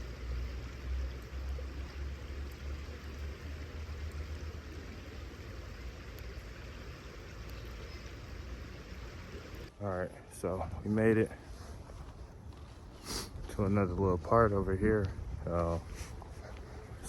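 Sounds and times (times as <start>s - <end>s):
steady hiss: 0.0s - 9.7s
wind buffeting microphone: 13.3s - 17.0s.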